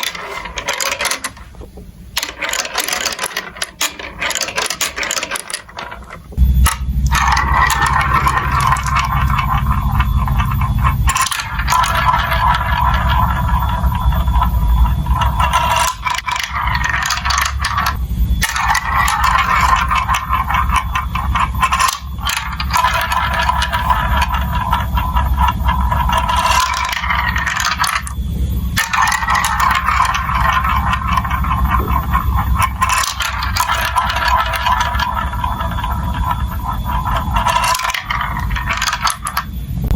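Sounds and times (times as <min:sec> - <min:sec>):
marbles rattling along plastic tracks: 0:00.0 - 0:39.9
steady low rumble: 0:06.2 - 0:11.2, 0:17.8 - 0:18.4, 0:28.1 - 0:28.8.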